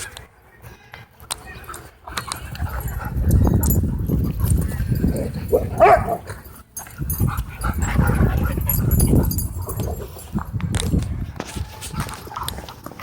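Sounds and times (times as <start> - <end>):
dog barking: 5.5 - 6.3.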